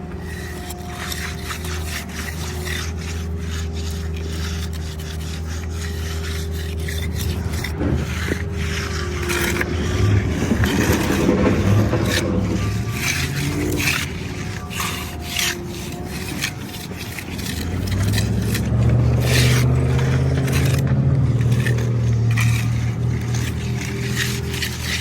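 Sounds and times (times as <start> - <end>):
hand tools scraping concrete: 0.0 - 25.0
steady engine hum: 0.0 - 25.0.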